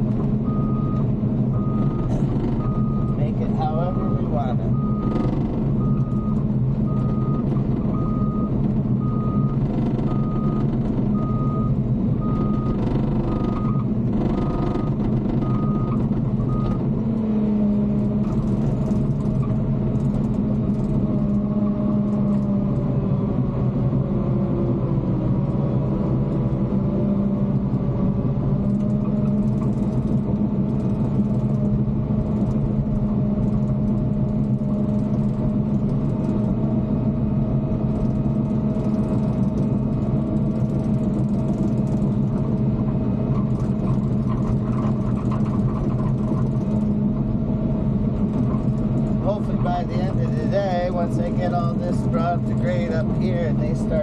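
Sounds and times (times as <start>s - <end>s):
diesel engine running: 0.0s - 54.0s
backup alarm beeping: 1.6s - 10.6s.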